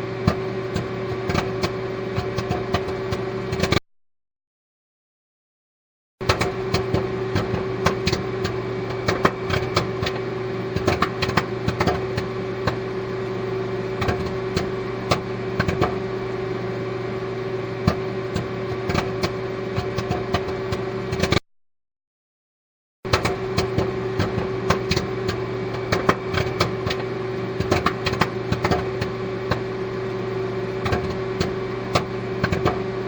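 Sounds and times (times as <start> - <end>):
sharp clicks and pops: 23.1 - 27.0
machine hum: 23.1 - 33.0.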